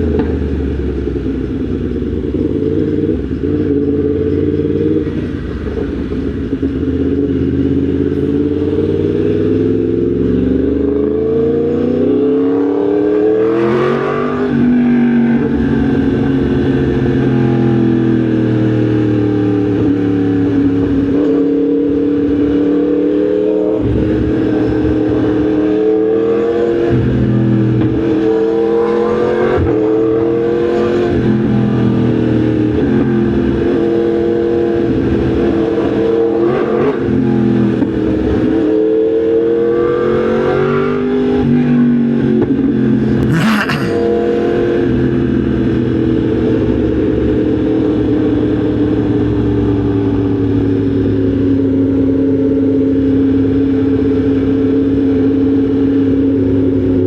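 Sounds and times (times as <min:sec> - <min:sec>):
motorcycle engine revving: 0:42.7 - 0:45.6.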